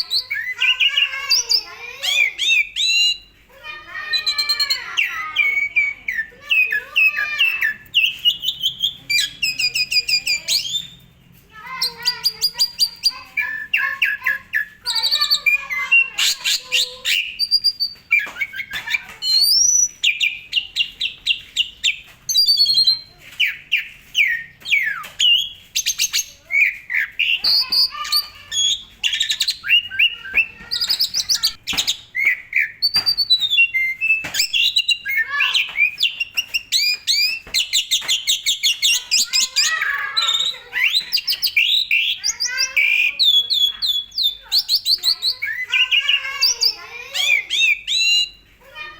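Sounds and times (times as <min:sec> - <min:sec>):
starling singing: 0:00.0 - 0:48.9.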